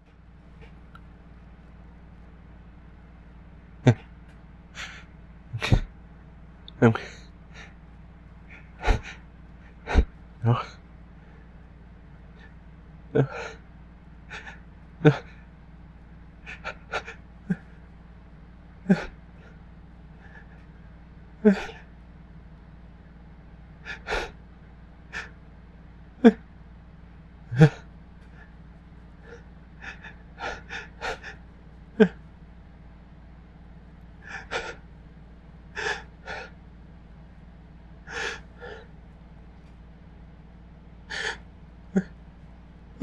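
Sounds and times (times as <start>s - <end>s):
person gasping breaths: 4.8s - 5.9s, 8.5s - 11.5s, 13.2s - 13.6s, 14.3s - 15.4s, 20.2s - 20.7s, 21.4s - 21.8s, 23.8s - 24.4s, 25.1s - 25.4s, 27.5s - 28.6s, 29.2s - 31.4s, 34.2s - 34.8s, 35.7s - 36.6s, 38.1s - 38.9s, 41.1s - 41.4s.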